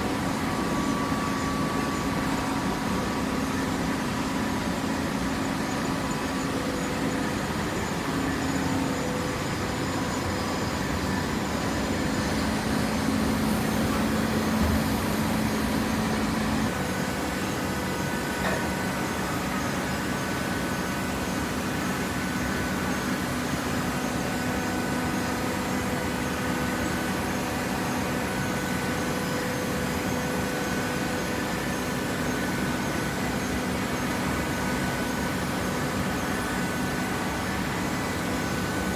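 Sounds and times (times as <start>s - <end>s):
hydraulic pump motor humming: 11.4s - 18.7s.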